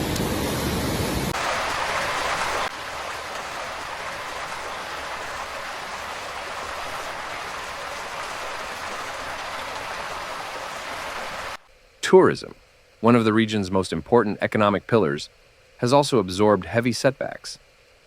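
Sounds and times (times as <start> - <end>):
steady rain: 0.0 - 11.6.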